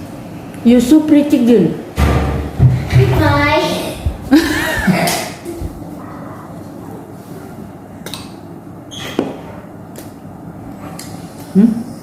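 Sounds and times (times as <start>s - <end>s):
low voiced hum: 2.7s - 8.9s, 9.5s - 12.0s
eating clicks and smacks: 8.0s - 8.4s, 9.9s - 10.2s, 10.9s - 11.2s.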